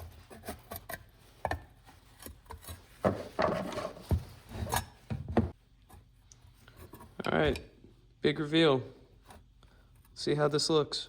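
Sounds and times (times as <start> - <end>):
scraping and rubbing: 0.0 - 7.3.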